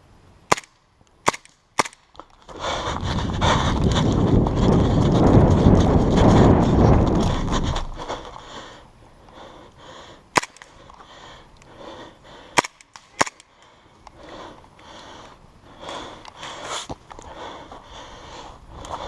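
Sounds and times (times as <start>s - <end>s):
airsoft pistol shots: 0.5s - 2.0s.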